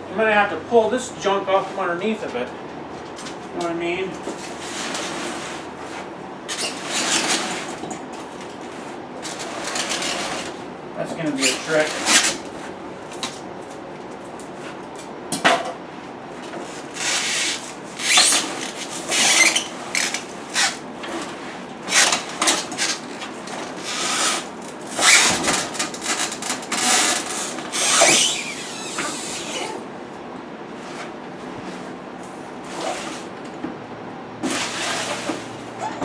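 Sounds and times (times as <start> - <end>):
packaging scraping and rubbing: 4.3 - 10.6, 11.3 - 12.8, 16.5 - 29.8, 32.6 - 33.3, 34.4 - 35.7.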